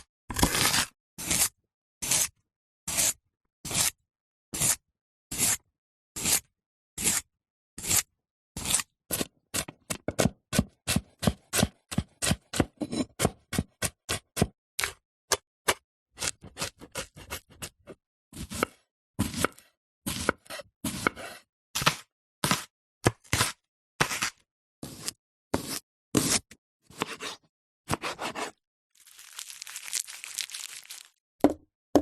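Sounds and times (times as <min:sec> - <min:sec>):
knife chopping on cutting board: 0:08.6 - 0:28.6, 0:31.4 - 0:32.0.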